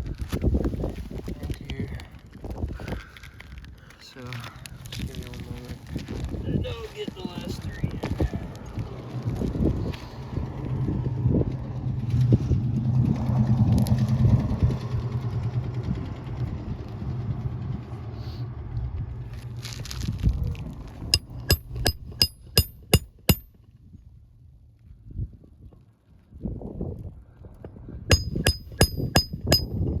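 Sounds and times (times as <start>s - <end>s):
engine running: 10.2s - 20.0s
hammer striking nail: 21.2s - 23.5s, 28.1s - 30.0s.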